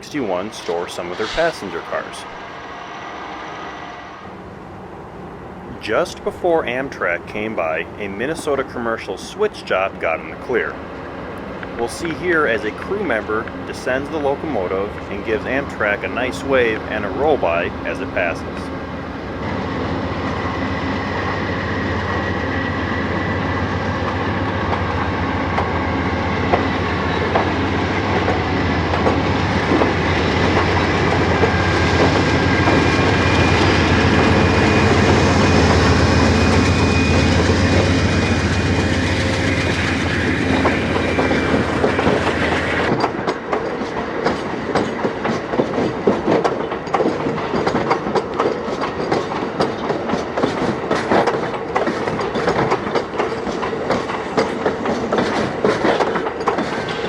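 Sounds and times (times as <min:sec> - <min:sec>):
diesel locomotive engine drone: 0:00.0 - 0:57.0
train wheels clacking over rail joints: 0:24.1 - 0:57.0.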